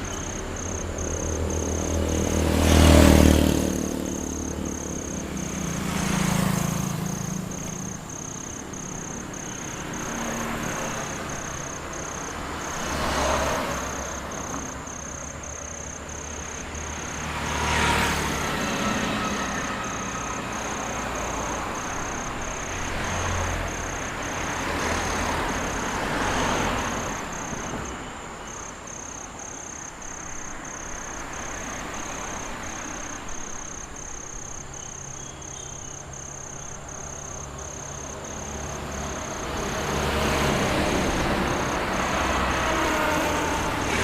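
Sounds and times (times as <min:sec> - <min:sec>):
vehicles passing: 0:00.0 - 0:44.0.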